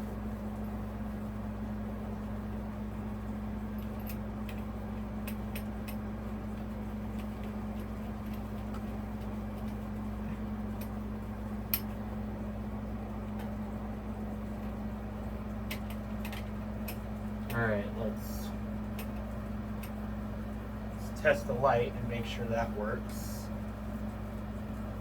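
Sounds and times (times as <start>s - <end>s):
steady low hum: 0.0s - 25.0s
clicks and taps of screws: 15.7s - 17.6s.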